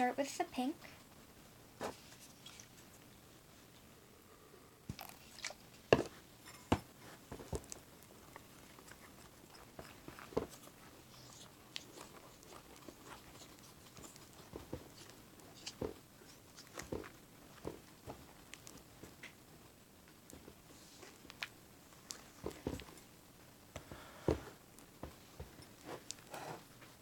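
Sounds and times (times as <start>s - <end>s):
sticky slime squelches: 4.9s - 6.3s, 7.1s - 19.4s.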